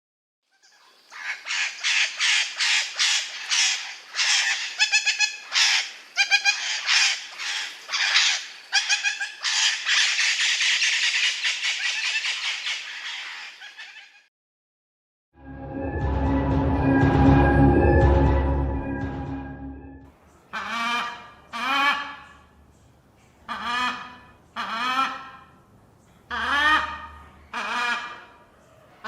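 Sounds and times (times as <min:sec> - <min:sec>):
parakeet squawking harshly: 0:01.2 - 0:14.2
parakeet screeching: 0:01.2 - 0:14.3.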